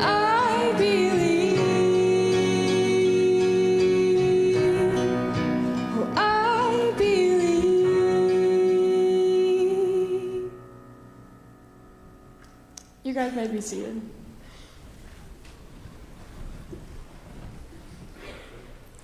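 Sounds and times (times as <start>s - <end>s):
congregation singing: 0.0s - 10.6s.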